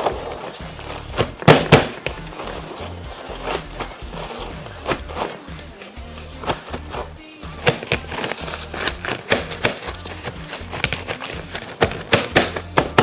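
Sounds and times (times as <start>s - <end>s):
paper towels crinkling: 0.0s - 7.2s
background music with bass line: 0.0s - 13.0s.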